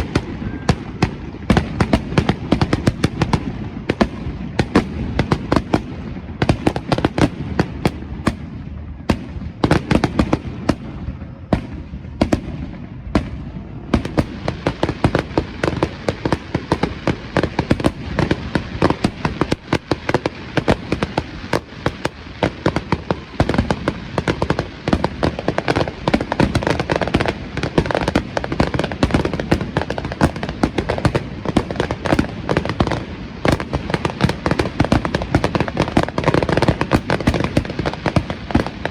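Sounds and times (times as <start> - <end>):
fireworks bangs and pops: 0.0 - 38.9
fireworks crackling: 0.0 - 38.9.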